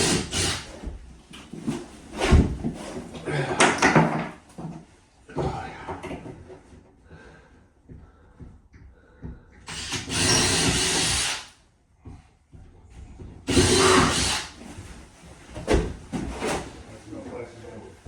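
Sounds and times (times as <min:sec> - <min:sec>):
power drill running: 0:00.0 - 0:00.8, 0:09.6 - 0:11.5, 0:13.5 - 0:14.6.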